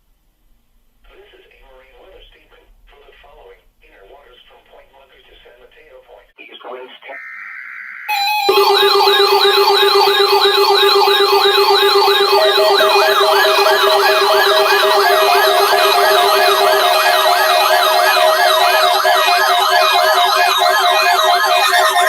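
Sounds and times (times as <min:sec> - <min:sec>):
electronic sirens warbling: 0:07.1 - 0:22.0
steady electronic tone: 0:07.2 - 0:22.0.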